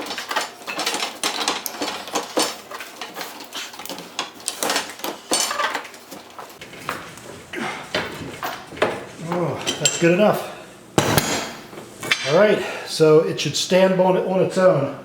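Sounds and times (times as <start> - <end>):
metal pipe fittings clanking: 7.9 - 10.4.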